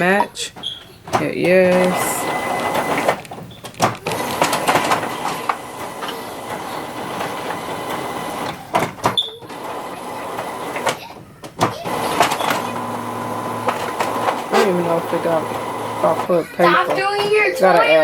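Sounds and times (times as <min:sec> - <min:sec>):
printer whirring and clacking: 0:00.0 - 0:18.0.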